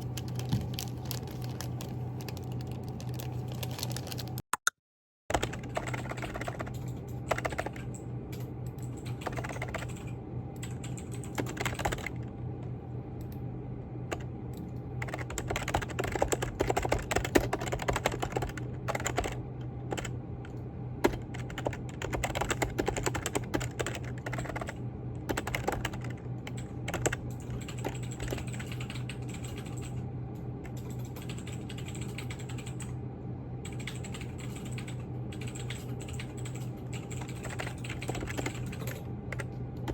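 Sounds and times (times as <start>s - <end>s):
steady low hum: 0.0s - 4.4s, 5.3s - 39.9s
typing on computer keyboard: 5.3s - 12.2s, 15.0s - 20.1s, 21.1s - 30.0s, 30.7s - 32.9s, 33.7s - 39.9s.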